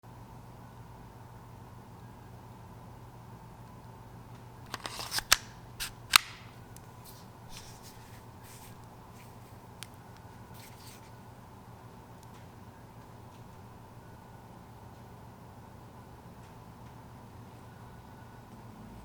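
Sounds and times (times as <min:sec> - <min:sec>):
airsoft pistol clacks: 0:04.7 - 0:06.6
rustling: 0:04.7 - 0:11.2.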